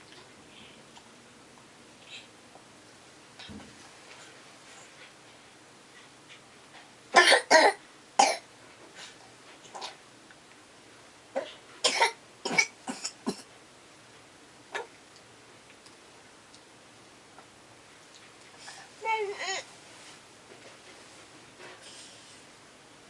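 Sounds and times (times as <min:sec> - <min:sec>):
child coughing: 0:07.2 - 0:08.4, 0:11.4 - 0:13.5.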